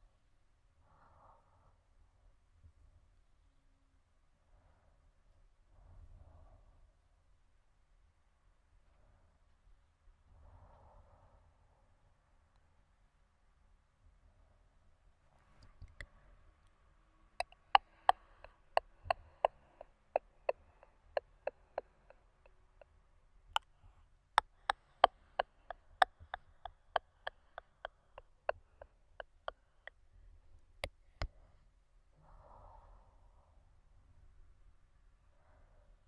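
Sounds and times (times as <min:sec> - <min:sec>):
tongue clicking: 0:17.4 - 0:22.2, 0:24.4 - 0:29.6.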